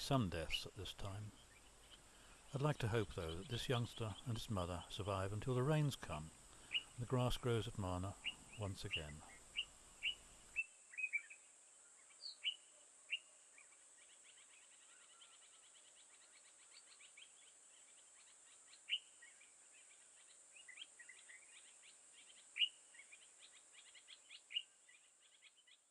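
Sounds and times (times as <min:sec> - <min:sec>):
sharp bird chirps: 0:06.6 - 0:11.4, 0:12.0 - 0:25.9.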